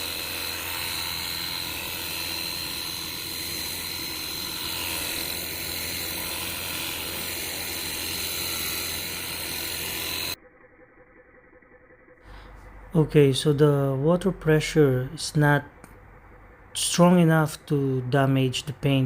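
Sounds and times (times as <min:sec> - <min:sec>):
pressure washer whining: 0:00.0 - 0:11.4.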